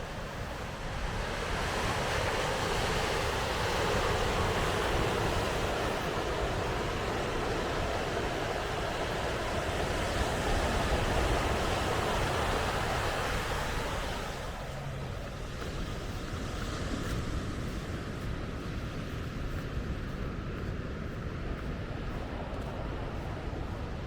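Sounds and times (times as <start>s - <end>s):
ocean surf washing on beach: 0.0s - 24.0s.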